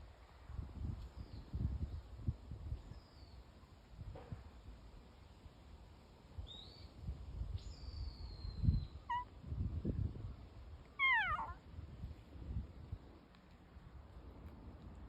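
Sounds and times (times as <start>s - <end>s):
cat meowing: 11.0s - 11.6s.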